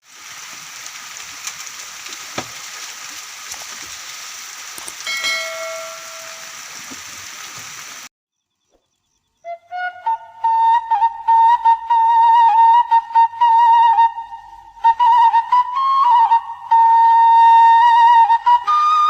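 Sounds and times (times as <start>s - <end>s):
steady rain hiss: 0.0s - 8.1s
pitched tone with overtones: 5.1s - 6.6s.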